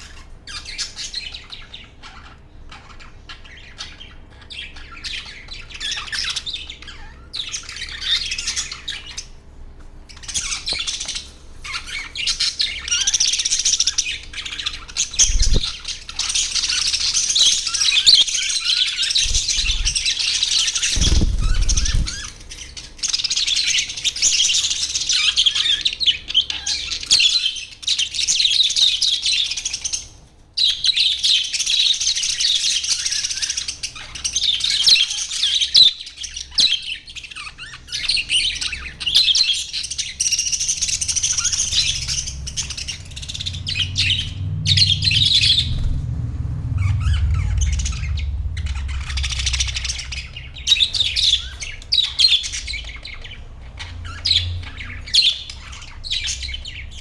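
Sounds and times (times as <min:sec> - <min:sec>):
budgerigars chattering: 0:00.0 - 0:57.0
low thumps: 0:43.4 - 0:51.5.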